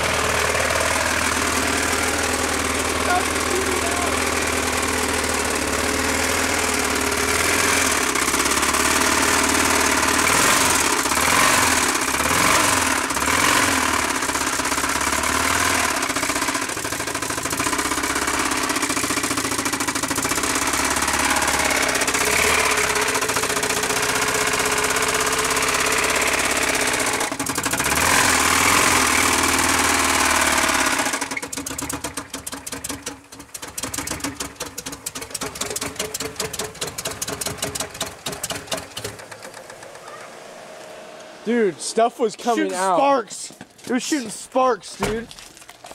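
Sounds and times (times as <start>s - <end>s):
engine knocking and clattering: 0.0s - 40.5s
rapid rattling clicks: 31.2s - 40.0s.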